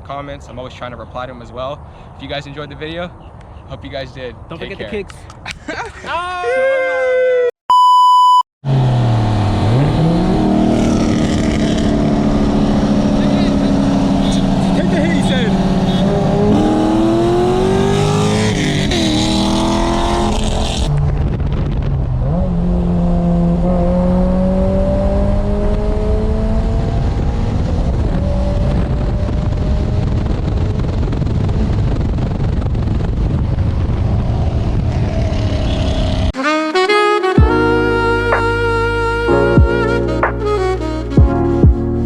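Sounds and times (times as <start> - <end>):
car engine accelerating hard: 8.6 - 31.8.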